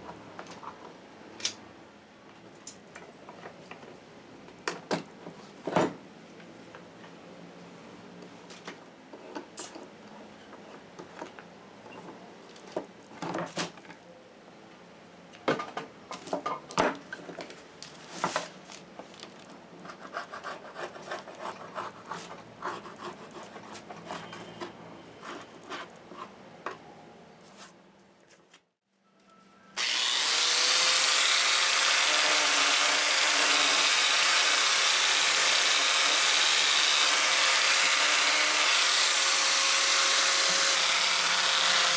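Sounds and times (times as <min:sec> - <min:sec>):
scraping and rubbing on wood: 0:17.9 - 0:26.4
power tool running: 0:29.8 - 0:41.9.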